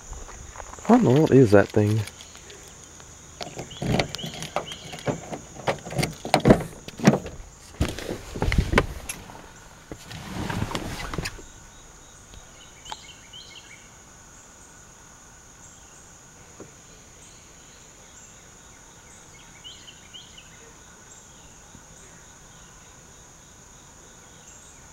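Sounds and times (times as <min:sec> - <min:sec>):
crickets and insects droning: 0:00.0 - 0:24.9
handling thumps and rustles: 0:03.4 - 0:11.5.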